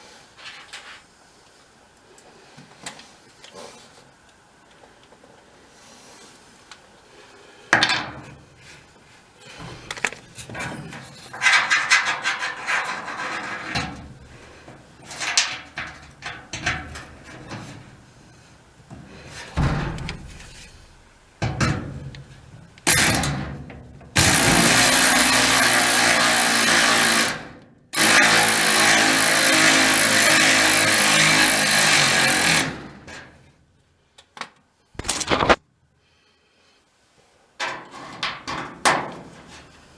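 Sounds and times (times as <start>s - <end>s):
metal parts knocking and rattling: 9.7s - 14.0s
power drill running: 24.2s - 27.4s, 28.0s - 32.9s.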